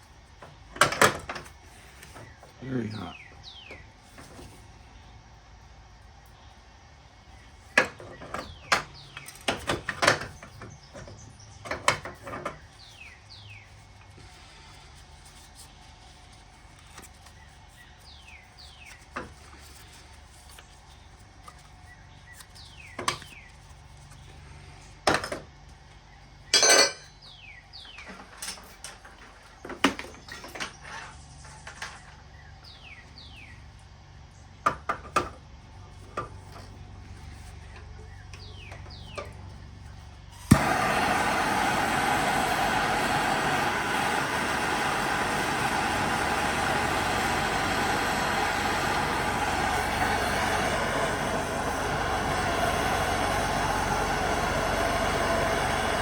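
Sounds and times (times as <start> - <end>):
metal parts clinking and clanking: 26.6 - 27.1.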